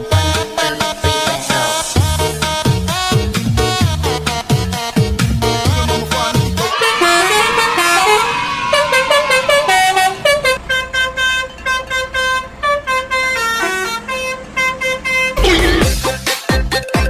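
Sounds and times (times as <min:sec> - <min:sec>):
dance music bass beat: 0:00.0 - 0:06.6, 0:15.4 - 0:17.0
multi-tone bus horn tune: 0:00.0 - 0:16.3.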